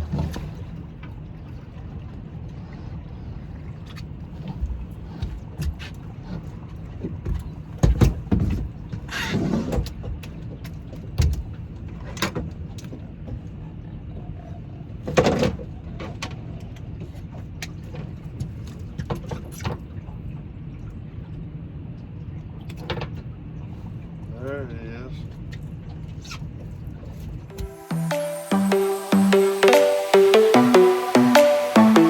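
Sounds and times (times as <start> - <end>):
scrape on a boat: 1.8 - 7.6, 8.6 - 10.2
knocks and thumps on a boat: 4.4 - 13.6.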